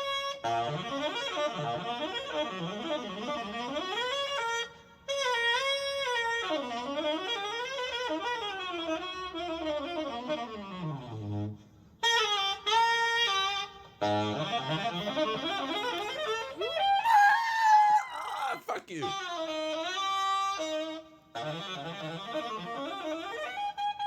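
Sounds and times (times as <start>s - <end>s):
tenor saxophone jazz solo: 5.1s - 17.0s.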